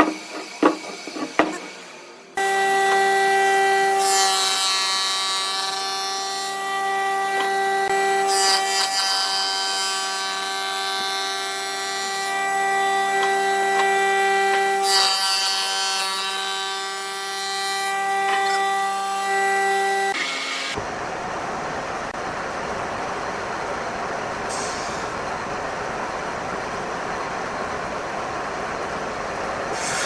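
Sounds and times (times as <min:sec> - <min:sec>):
turning tool cutting wood: 0:00.0 - 0:18.7
wood lathe whining: 0:00.0 - 0:20.6.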